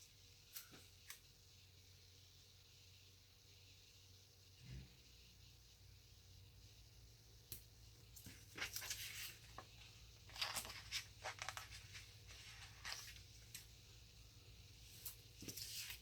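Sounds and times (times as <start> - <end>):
paper rustling: 8.3 - 13.7.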